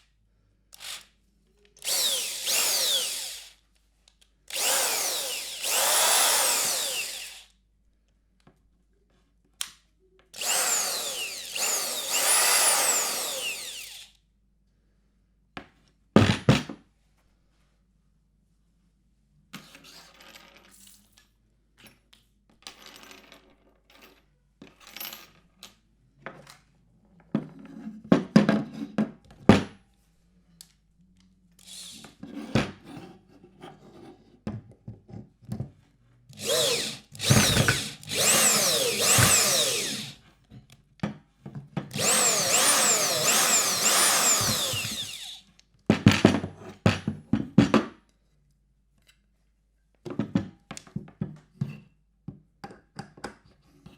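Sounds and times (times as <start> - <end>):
electric screwdriver motor whirring: 0.8 - 1.1, 1.8 - 3.6, 4.5 - 7.5, 10.4 - 14.1, 31.6 - 32.1, 36.4 - 40.2, 41.9 - 45.4.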